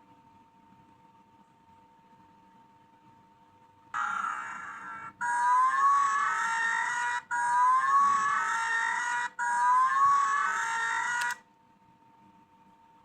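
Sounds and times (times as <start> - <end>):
buzzy electronic alarm blasts: 4.0 - 11.4.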